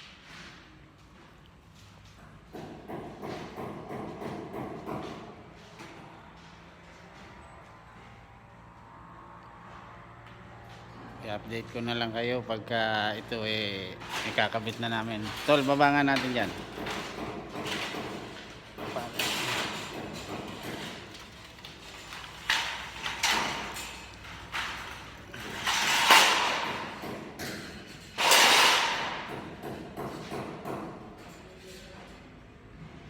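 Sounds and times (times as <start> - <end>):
construction thuds and knocks: 2.4 - 5.9, 14.0 - 21.3, 22.5 - 31.2.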